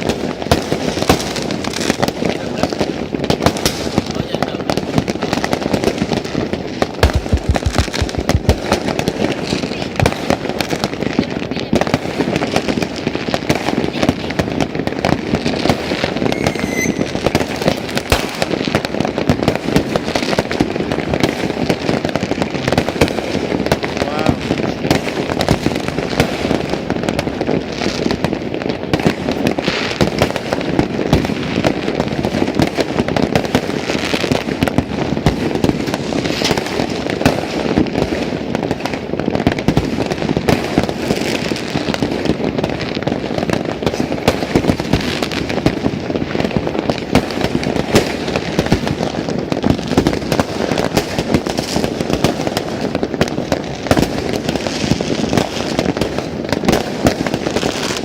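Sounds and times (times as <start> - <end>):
fireworks and firecrackers banging: 0.0 - 58.0.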